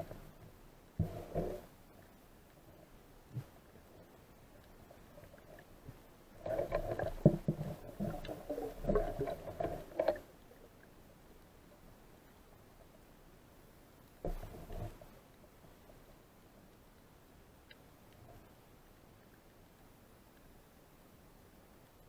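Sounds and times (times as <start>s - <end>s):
water gurgling underwater: 6.4s - 10.3s.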